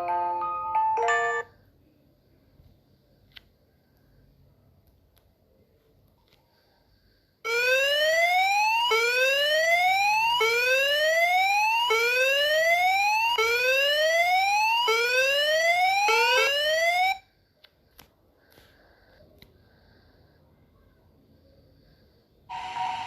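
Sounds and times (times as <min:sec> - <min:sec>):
whooping alarm siren: 0:07.5 - 0:17.2, 0:22.5 - 0:23.0.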